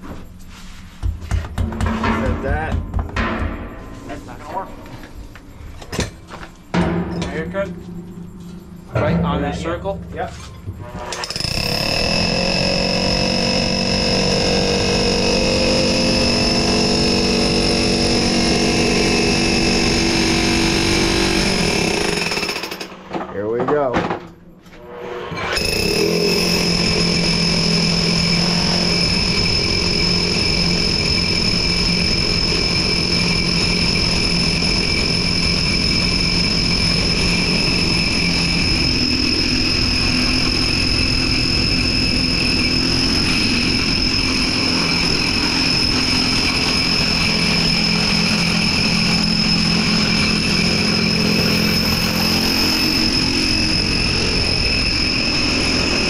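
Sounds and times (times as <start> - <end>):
concrete core drill whining: 10.7 - 22.9, 25.2 - 56.0.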